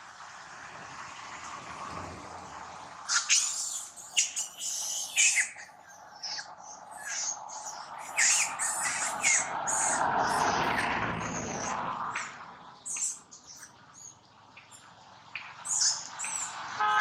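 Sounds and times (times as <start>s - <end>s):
baby monkey squealing: 3.1s - 10.9s.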